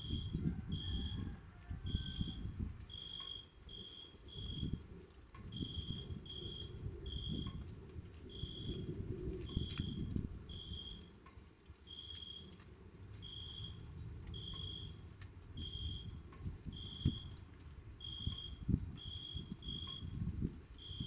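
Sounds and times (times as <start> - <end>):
insect chirps: 2.0 - 4.8, 5.5 - 7.6, 8.3 - 8.8, 9.5 - 11.1, 11.9 - 12.5, 13.2 - 15.0, 15.6 - 16.1, 16.7 - 17.3, 18.0 - 20.2, 20.8 - 21.0
distant thunder rumble: 3.6 - 11.3.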